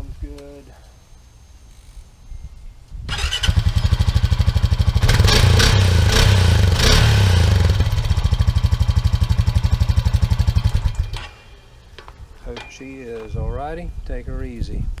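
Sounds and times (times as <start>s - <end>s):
atv engine starting and idling: 3.1s - 11.5s.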